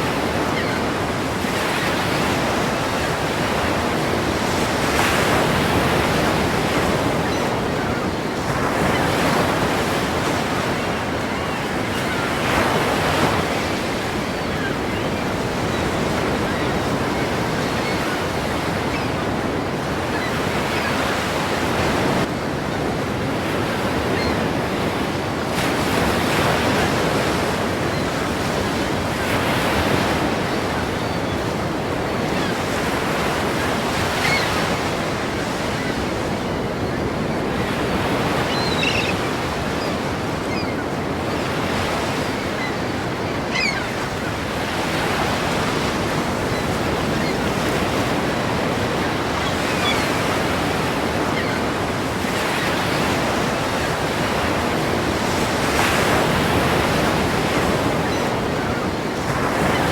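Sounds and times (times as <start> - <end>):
ocean waves breaking: 0.0 - 59.9.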